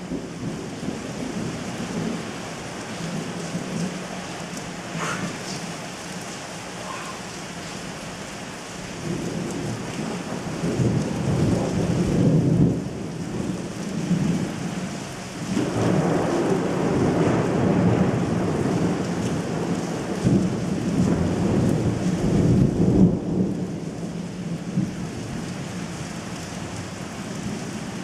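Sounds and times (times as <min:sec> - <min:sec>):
steady rain: 0:00.0 - 0:28.0
rolling thunder: 0:08.9 - 0:25.5.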